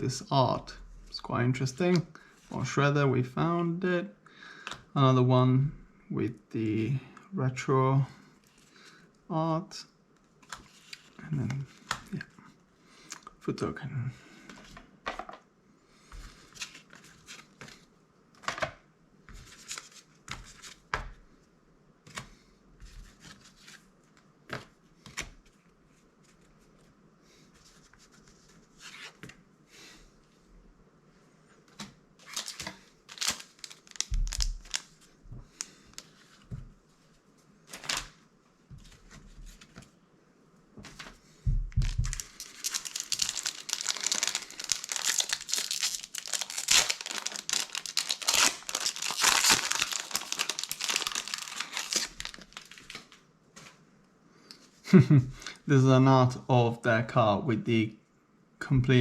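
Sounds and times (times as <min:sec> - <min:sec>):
wrapper tearing and crinkling: 0:32.2 - 0:36.1, 0:41.8 - 0:53.2.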